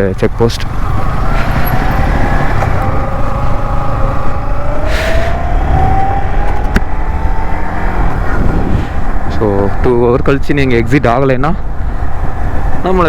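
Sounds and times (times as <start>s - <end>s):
motorcycle engine running: 0.4s - 4.7s
brief hiss: 4.9s - 5.4s.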